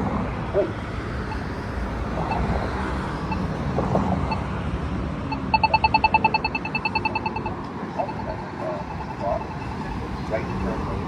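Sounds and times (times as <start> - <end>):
pedestrian signal ticking: 0.6 - 4.6, 5.3 - 11.0.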